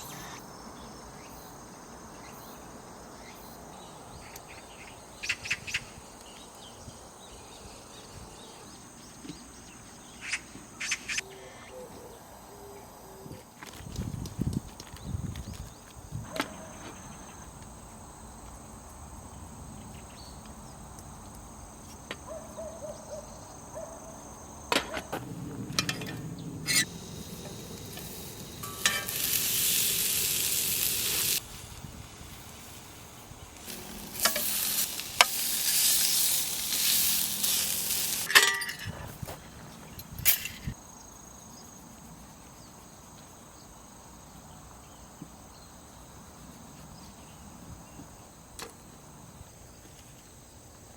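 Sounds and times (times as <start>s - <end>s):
crickets chirping: 0.0s - 50.9s
food sizzling: 26.6s - 38.5s.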